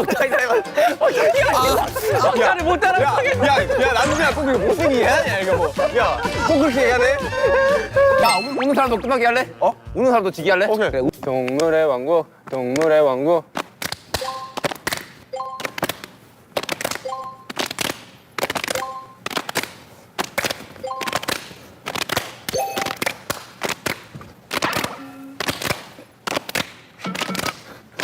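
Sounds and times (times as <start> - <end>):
hands clapping and slapping: 13.6 - 27.7
short beeping tones: 14.2 - 14.6, 15.3 - 15.7, 17.0 - 17.5, 18.8 - 19.2, 20.8 - 21.3, 22.6 - 23.0.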